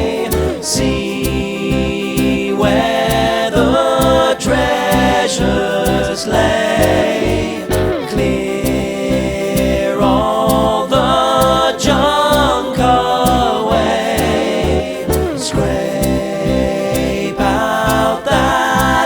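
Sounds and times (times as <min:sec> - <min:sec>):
choir-like singing: 0:00.0 - 0:19.0
steady bass beat: 0:00.0 - 0:19.0.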